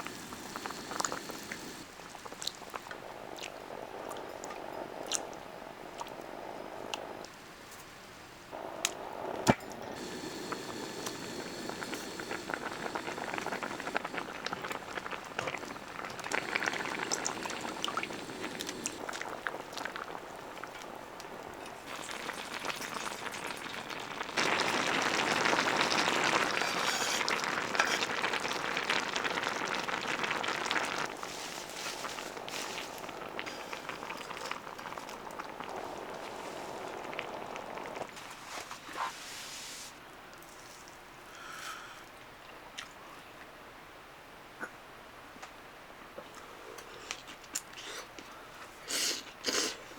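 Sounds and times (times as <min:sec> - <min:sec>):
stew bubbling in a pot: 0:00.0 - 0:07.3, 0:08.5 - 0:38.7.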